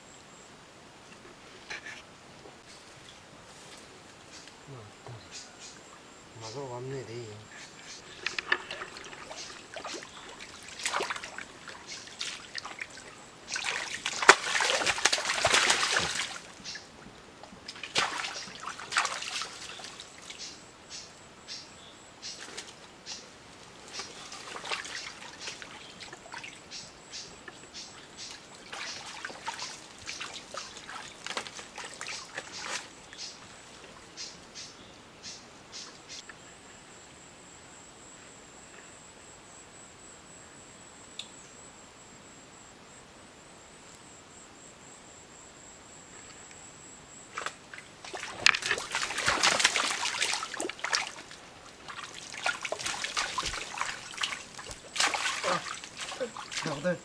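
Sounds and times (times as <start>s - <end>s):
creek water splashing and trickling: 2.6s - 21.6s, 22.2s - 36.2s, 47.3s - 57.0s.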